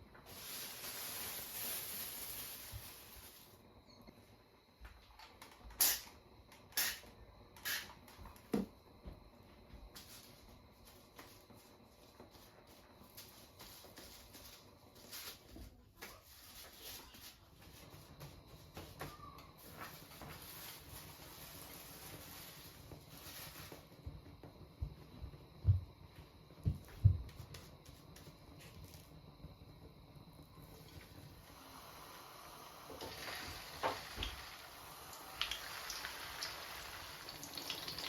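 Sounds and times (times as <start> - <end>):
steady hiss: 0.0 - 3.7, 27.4 - 38.0.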